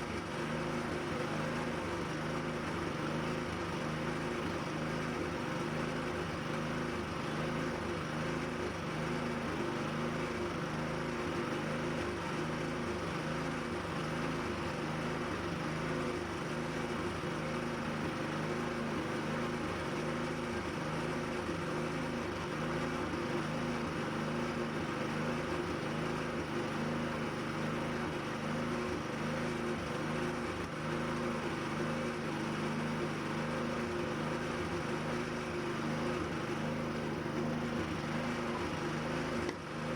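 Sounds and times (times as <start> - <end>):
machine droning hum: 11.3 - 39.9.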